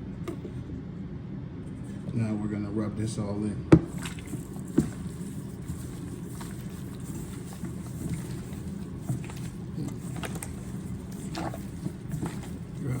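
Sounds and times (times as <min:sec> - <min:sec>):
low background hum: 0:00.0 - 0:13.0
gloved hands rubbing chicken: 0:03.9 - 0:13.0.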